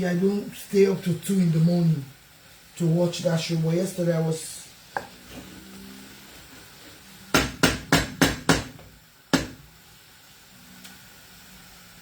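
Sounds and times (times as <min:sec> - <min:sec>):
kitchen utensil knocking: 0:07.4 - 0:09.6.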